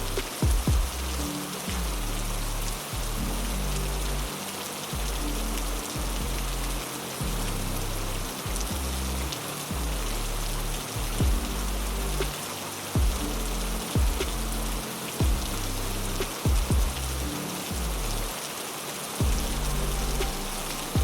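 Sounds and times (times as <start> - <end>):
heavy rain hissing: 0.0 - 21.0
soft music with low held notes: 0.0 - 21.0
sharp low knocks: 0.2 - 1.0, 11.2 - 11.5, 13.0 - 13.4, 14.0 - 14.4, 15.2 - 15.6, 16.2 - 17.1, 19.2 - 19.6.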